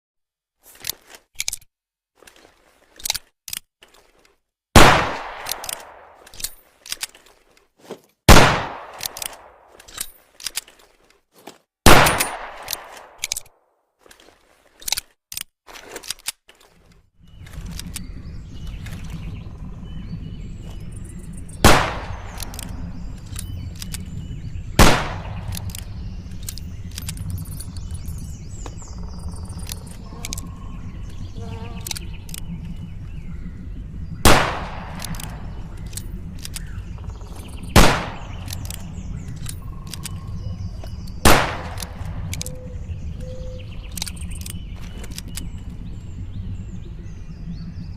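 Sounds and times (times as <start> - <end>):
pistol shots: 4.8 - 6.1, 8.3 - 9.1, 11.8 - 13.2, 21.6 - 22.5, 24.8 - 25.5, 34.3 - 35.4, 37.8 - 38.5, 41.2 - 42.0
steady low noise: 17.2 - 47.9.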